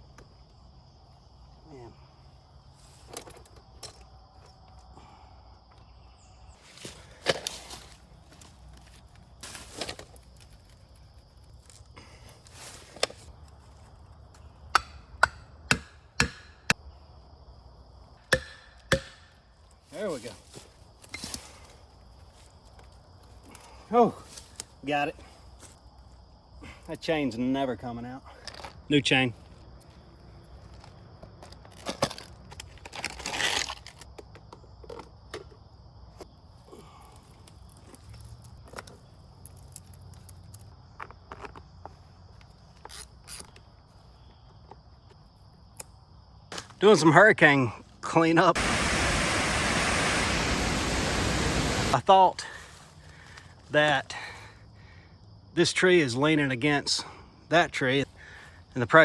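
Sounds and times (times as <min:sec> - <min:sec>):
crackling rustle: 0:06.6 - 0:14.1, 0:31.6 - 0:34.1
tool striking wood: 0:14.7 - 0:16.8, 0:18.3 - 0:19.4.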